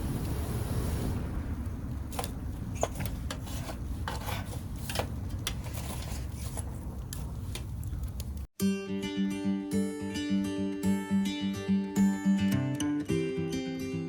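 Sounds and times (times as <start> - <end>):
steady low rumble: 0.0 - 5.6
hard objects clicking and scraping: 2.2 - 8.5.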